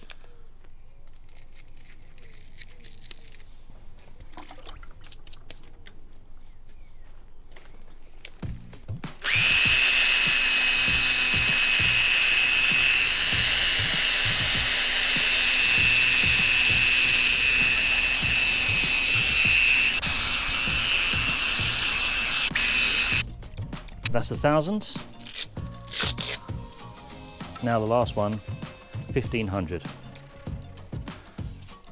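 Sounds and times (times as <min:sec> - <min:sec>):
power drill sanding plastic: 0:09.1 - 0:23.3.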